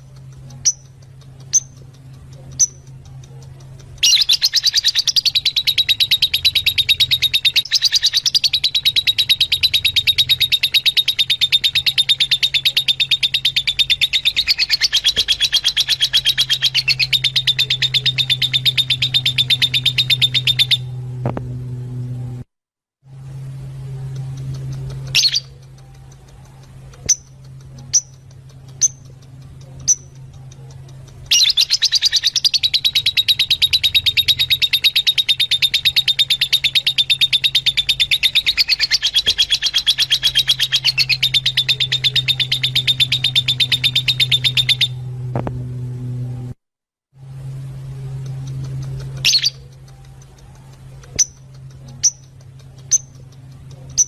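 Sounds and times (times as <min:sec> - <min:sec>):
lovebirds chattering: 0:00.0 - 0:21.0, 0:24.0 - 0:45.1, 0:48.0 - 0:54.0
steady low hum: 0:00.0 - 0:46.6, 0:47.2 - 0:54.0.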